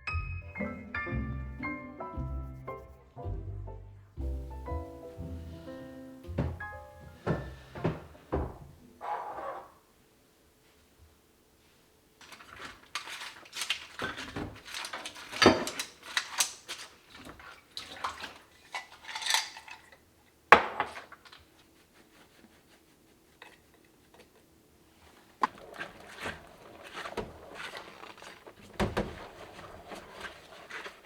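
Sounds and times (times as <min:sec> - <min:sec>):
dishes and cutlery clattering: 0:17.8 - 0:20.0.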